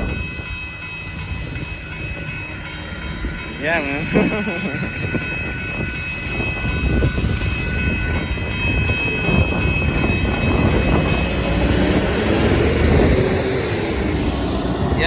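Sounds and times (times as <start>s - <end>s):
freight train wheels rumbling on rail: 0.0s - 15.0s.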